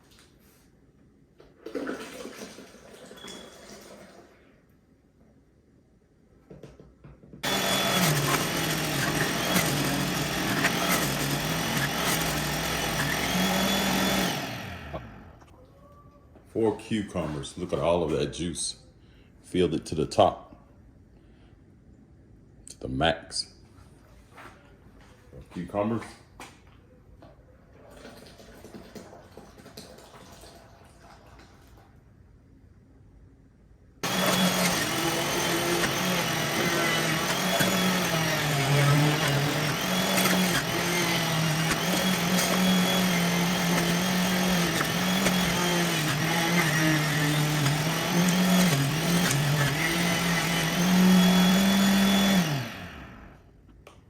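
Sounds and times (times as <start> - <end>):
juicer running: 1.6 - 4.4, 7.4 - 15.5, 34.0 - 53.5.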